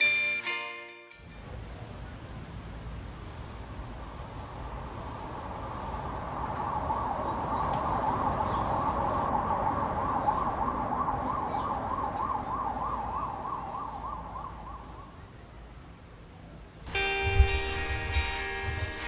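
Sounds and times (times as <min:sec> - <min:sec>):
emergency siren warbling: 0:03.8 - 0:15.4.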